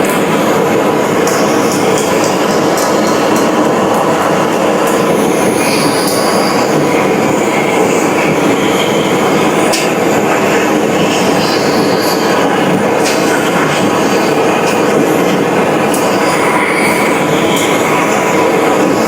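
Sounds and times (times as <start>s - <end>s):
loud machinery noise: 0.0s - 19.0s
high-pitched squeals: 4.3s - 10.0s, 11.0s - 13.0s, 15.7s - 19.0s.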